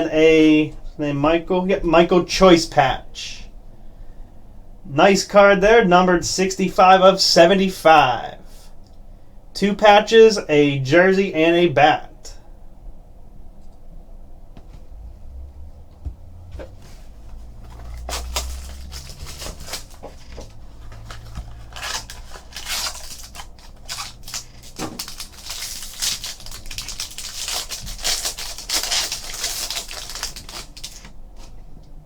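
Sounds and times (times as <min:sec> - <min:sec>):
wrapper crinkling and tearing: 0:17.3 - 0:31.6.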